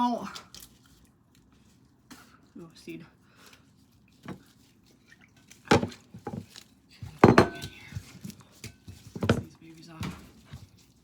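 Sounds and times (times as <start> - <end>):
kitchen items knocking on wood: 5.7 - 6.4, 7.2 - 8.1, 9.0 - 10.3.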